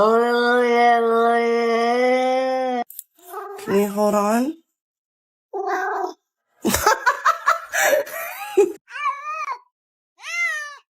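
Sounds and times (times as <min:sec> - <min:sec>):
person laughing: 0:06.6 - 0:08.8
cat meowing: 0:08.9 - 0:10.9.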